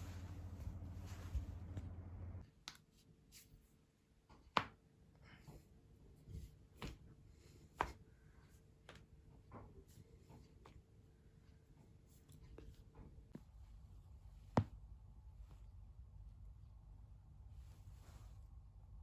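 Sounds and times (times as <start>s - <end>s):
steady low hum: 0.0s - 2.4s, 5.3s - 19.0s.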